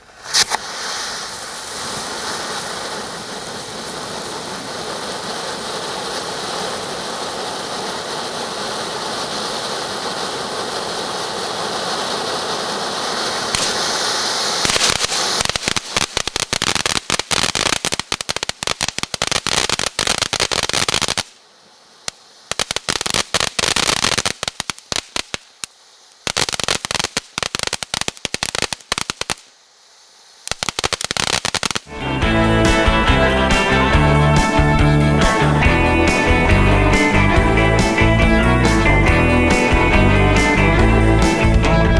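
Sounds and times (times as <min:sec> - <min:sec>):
firework fountain hissing: 0:00.0 - 0:41.9
crackle of small pops: 0:13.5 - 0:13.9, 0:14.6 - 0:29.6.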